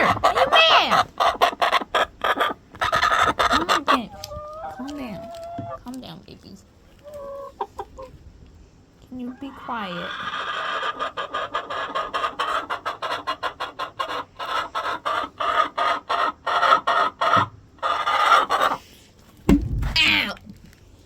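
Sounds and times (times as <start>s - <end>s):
hen squawking and clucking: 0.0s - 5.9s, 7.0s - 8.2s, 9.2s - 18.9s.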